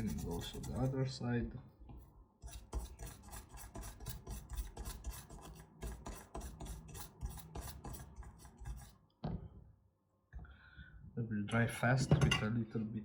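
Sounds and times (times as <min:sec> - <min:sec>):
brisk scrubbing of circuit board: 0:00.0 - 0:01.2, 0:02.4 - 0:09.0.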